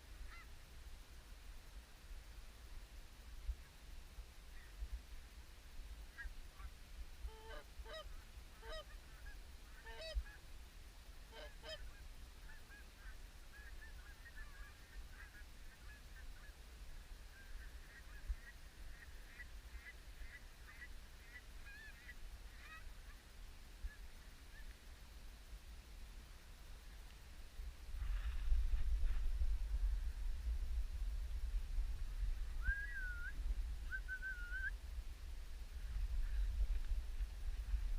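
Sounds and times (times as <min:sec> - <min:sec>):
geese honking: 0:07.3 - 0:10.2, 0:11.3 - 0:16.5.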